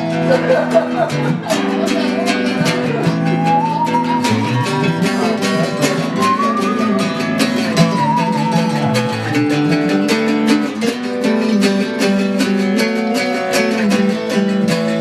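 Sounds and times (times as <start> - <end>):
strummed guitar: 0.0 - 15.0
high melody with vibrato: 1.8 - 14.1.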